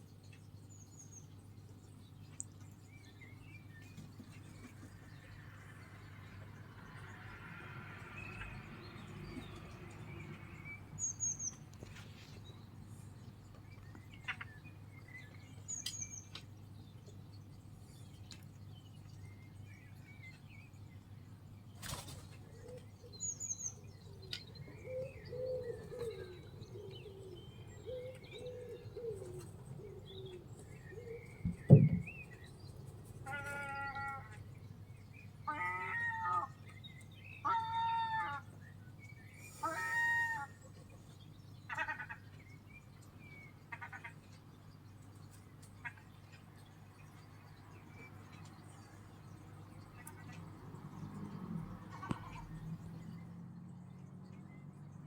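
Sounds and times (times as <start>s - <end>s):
gulls calling: 35.3s - 38.7s, 39.3s - 42.4s.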